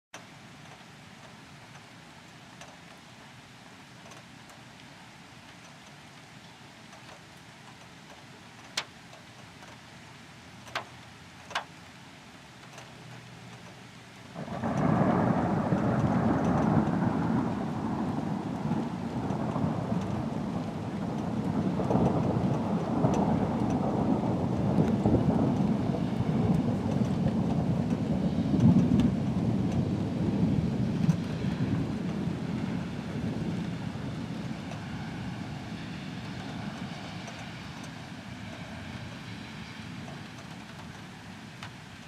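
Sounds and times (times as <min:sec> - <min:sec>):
rain hissing: 0:00.2 - 0:42.0
rolling thunder rumble: 0:14.4 - 0:41.3.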